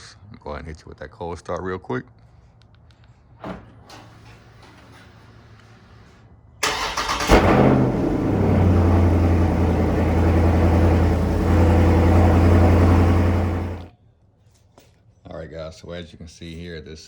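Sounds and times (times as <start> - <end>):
car engine revving and idling: 6.6 - 13.9
starter motor cranking: 6.6 - 13.9.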